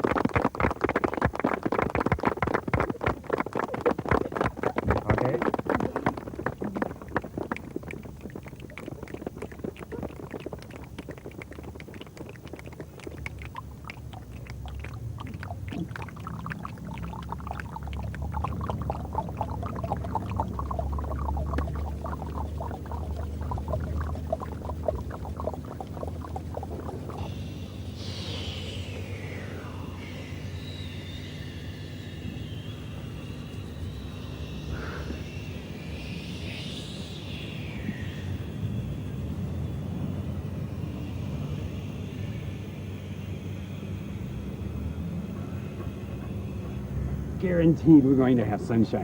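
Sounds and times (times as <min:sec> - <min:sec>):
hands snapping clapping and slapping: 0:00.0 - 0:16.0.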